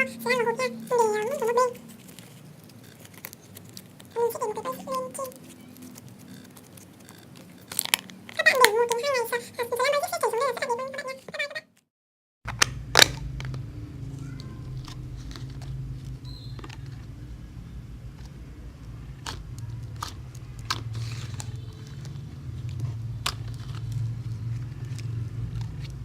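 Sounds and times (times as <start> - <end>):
sticky slime crackles: 1.4 - 9.0, 18.1 - 26.0
steady low hum: 12.5 - 26.0.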